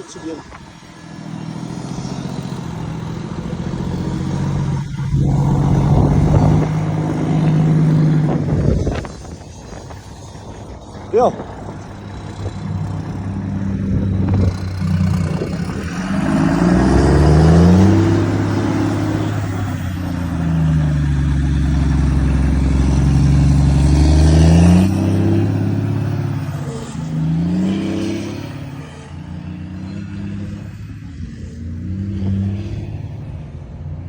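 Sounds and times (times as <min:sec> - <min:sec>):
truck diesel engine pulling hard: 0:00.0 - 0:34.0.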